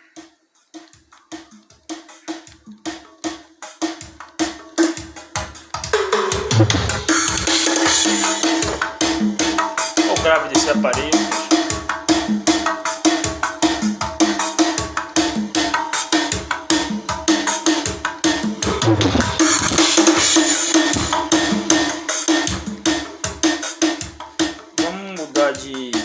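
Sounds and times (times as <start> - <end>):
music with fast drum beat: 0.0 - 26.0
falling bass sweep: 6.5 - 7.0.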